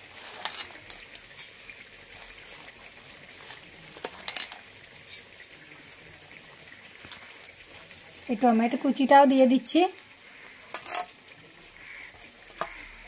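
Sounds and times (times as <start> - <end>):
spoon clinking on container: 10.7 - 11.1.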